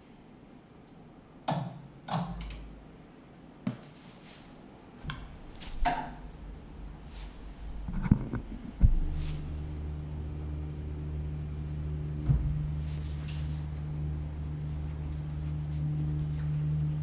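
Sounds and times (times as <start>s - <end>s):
machine low hum: 4.4s - 17.0s.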